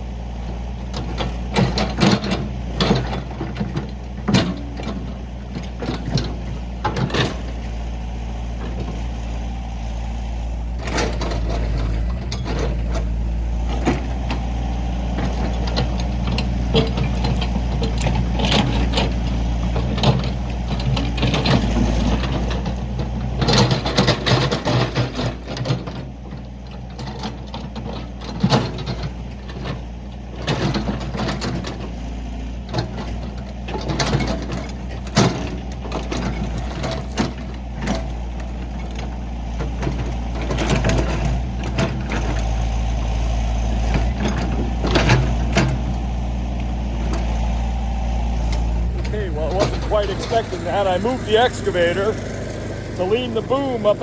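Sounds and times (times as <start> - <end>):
diesel excavator engine running: 0.0 - 54.0
metallic clanks and knocks: 32.7 - 42.5, 43.7 - 47.4.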